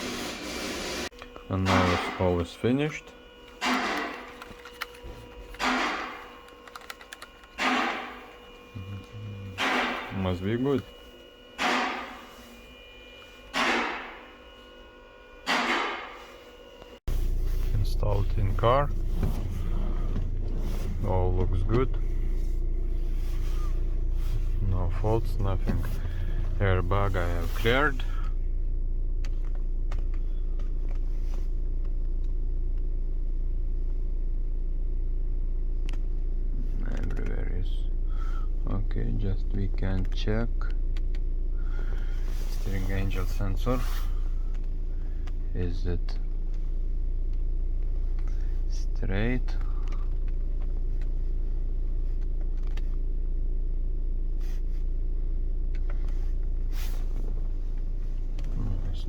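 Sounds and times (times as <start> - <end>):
car engine idling: 17.1 - 36.8, 37.9 - 59.0.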